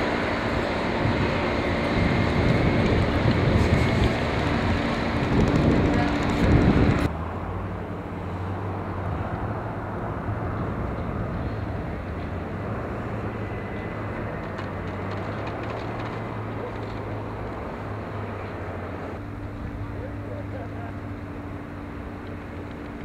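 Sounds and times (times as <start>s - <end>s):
wind buffeting microphone: 0.0s - 7.1s, 8.6s - 18.7s
low mechanical hum: 0.0s - 23.0s
noisy outdoor background: 0.0s - 23.0s.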